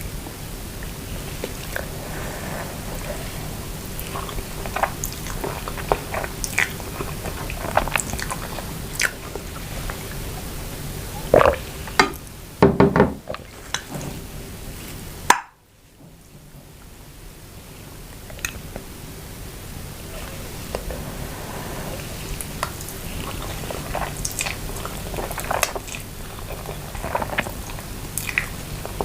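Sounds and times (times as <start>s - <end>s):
chewing food: 0.8s - 12.3s, 21.9s - 29.0s
wet mouth clicks: 4.0s - 10.2s, 22.6s - 29.0s.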